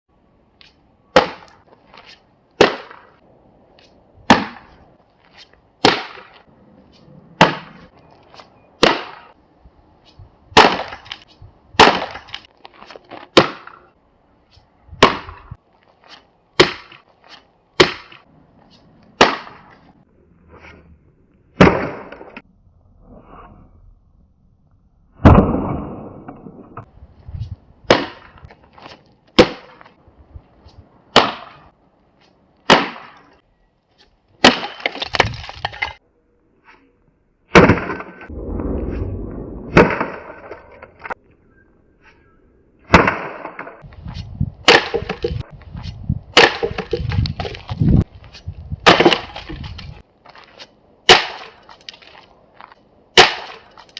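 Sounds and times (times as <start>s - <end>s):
axe striking wooden boards: 1.2s - 1.6s, 2.6s - 3.1s, 4.3s - 4.8s, 5.8s - 6.4s, 7.4s - 7.9s, 8.8s - 9.3s, 10.6s - 11.2s, 11.8s - 12.4s, 13.3s - 13.8s, 15.0s - 15.4s, 16.6s - 17.0s, 17.8s - 18.2s, 19.2s - 19.7s, 21.6s - 22.3s, 27.9s - 28.4s, 29.4s - 29.9s, 31.1s - 31.6s, 32.7s - 33.2s, 34.4s - 36.0s, 37.5s - 38.2s, 39.8s - 40.2s, 42.9s - 43.8s, 44.6s - 45.4s, 46.3s - 47.6s, 48.8s - 49.6s, 51.1s - 51.6s, 53.2s - 53.8s
broken wood pieces clattering: 34.4s - 36.0s
wood cracking and splintering: 34.4s - 36.0s, 48.8s - 50.5s.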